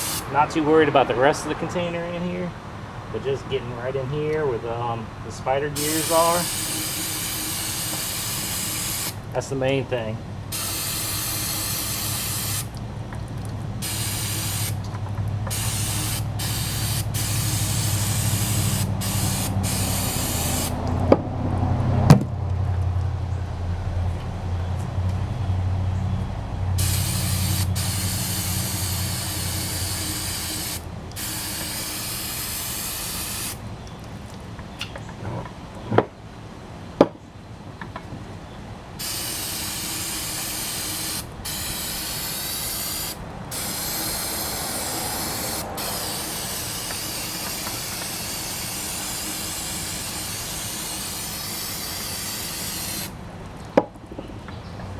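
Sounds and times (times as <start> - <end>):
aerosol spray hissing: 0.0 - 0.3, 5.8 - 9.2, 10.5 - 12.7, 13.8 - 14.8, 15.5 - 20.8, 26.8 - 33.6, 39.0 - 53.2.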